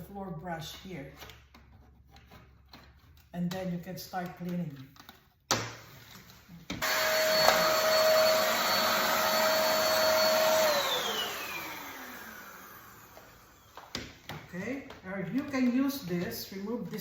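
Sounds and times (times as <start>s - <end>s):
vacuum cleaner motor whine: 6.8s - 14.0s.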